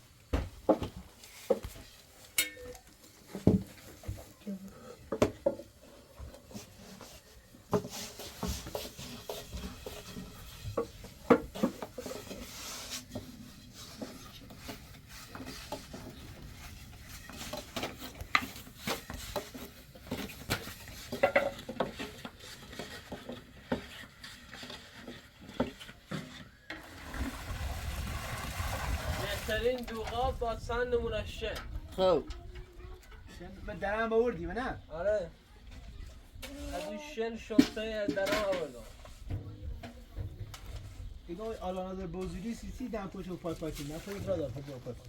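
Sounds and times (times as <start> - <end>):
metal utensils clinking on cookware: 2.4 - 2.8.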